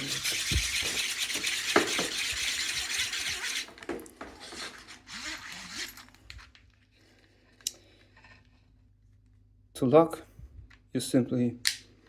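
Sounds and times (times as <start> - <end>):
ratchet strap reel rasping: 0.0 - 3.8, 4.4 - 6.5.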